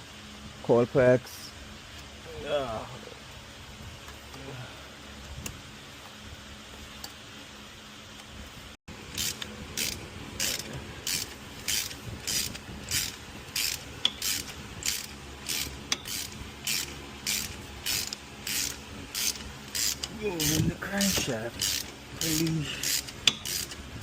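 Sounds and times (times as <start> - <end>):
ratchet wrench clicking: 9.1 - 23.9.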